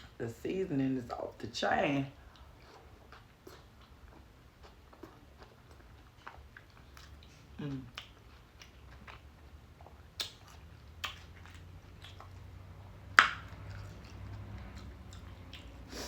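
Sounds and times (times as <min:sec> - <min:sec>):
person chewing food: 0:02.2 - 0:16.0
wet mouth smacks and clicks: 0:09.8 - 0:12.4, 0:13.2 - 0:15.7.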